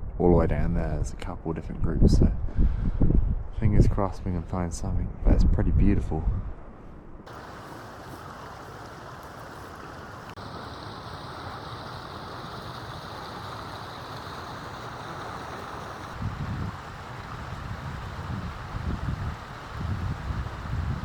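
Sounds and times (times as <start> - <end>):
wind gusting against microphone: 0.0 - 21.0
wind hissing: 7.2 - 21.0.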